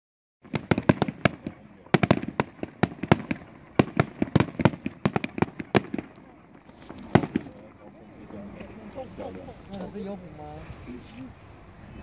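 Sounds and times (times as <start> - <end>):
fireworks bangs: 0.4 - 9.4.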